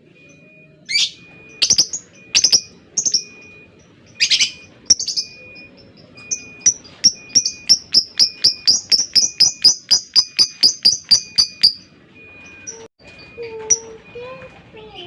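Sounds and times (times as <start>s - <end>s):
lovebird chattering: 0.9s - 11.9s.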